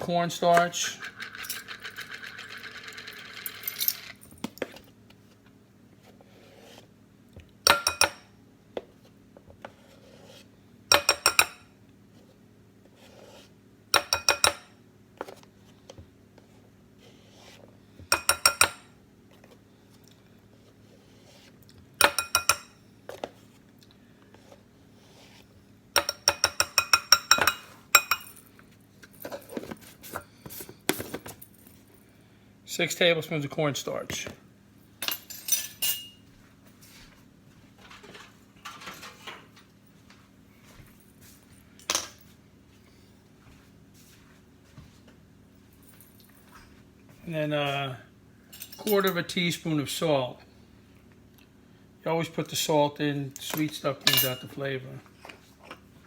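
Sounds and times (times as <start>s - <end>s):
metal spoon tapping a pot: 14.0s - 14.6s, 18.2s - 18.8s, 22.0s - 22.7s, 26.0s - 28.2s.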